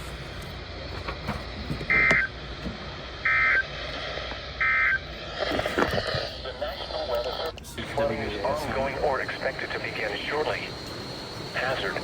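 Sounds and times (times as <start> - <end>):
radio hiss: 0.0 - 12.0
warbling data bursts: 3.2 - 12.0.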